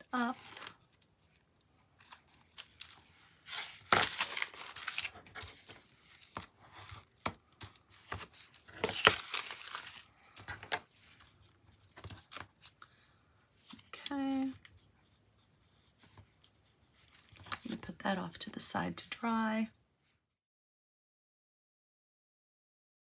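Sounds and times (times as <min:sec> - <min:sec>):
paper rustling and crinkling: 0:00.2 - 0:12.8, 0:13.6 - 0:18.0.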